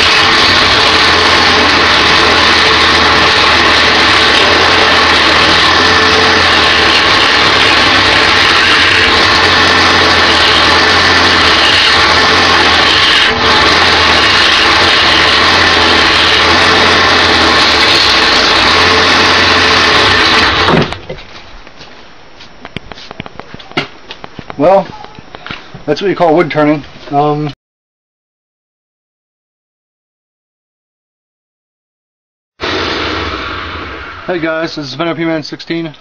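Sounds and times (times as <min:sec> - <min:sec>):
lathe motor hum: 0:00.0 - 0:21.0
turning tool cutting wood: 0:00.0 - 0:21.0, 0:32.6 - 0:34.8.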